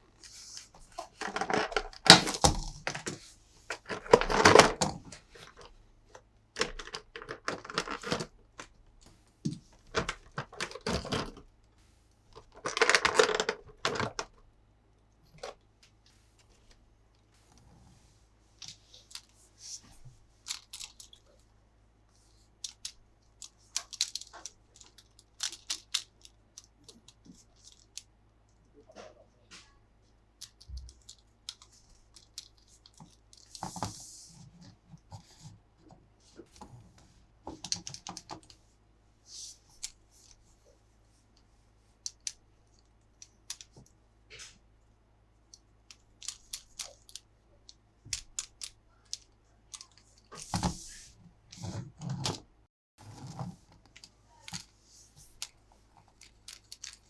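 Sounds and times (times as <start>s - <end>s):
plastic parts clicking and knocking: 0.8s - 11.5s, 12.3s - 14.4s, 18.6s - 21.3s, 22.6s - 28.1s, 30.4s - 34.0s, 37.4s - 38.6s, 42.0s - 44.6s, 45.5s - 52.5s, 55.3s - 57.0s.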